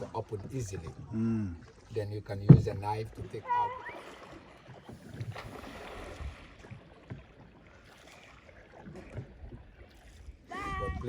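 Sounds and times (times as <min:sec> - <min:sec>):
water splashing around boat: 0:00.0 - 0:11.0
soft knocks: 0:02.4 - 0:02.8.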